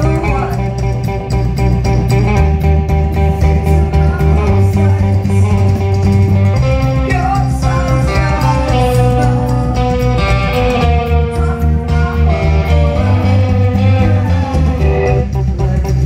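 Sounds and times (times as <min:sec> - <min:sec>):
bass guitar: 0:00.0 - 0:16.0
electric guitar: 0:00.0 - 0:16.0
rock band playing: 0:00.0 - 0:16.0.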